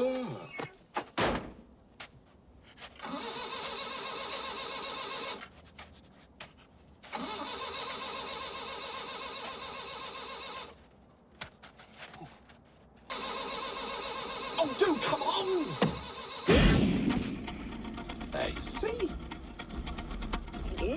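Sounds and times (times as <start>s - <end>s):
starter motor cranking engine: 3.0s - 5.4s, 7.0s - 10.8s, 13.1s - 20.9s.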